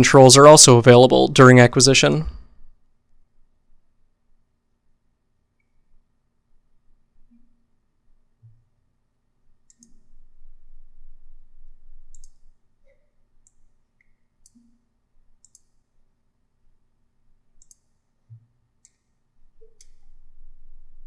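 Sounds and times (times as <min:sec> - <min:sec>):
computer mouse clicks: 0:09.6 - 0:10.1, 0:12.1 - 0:14.8, 0:15.4 - 0:15.9, 0:17.6 - 0:20.1.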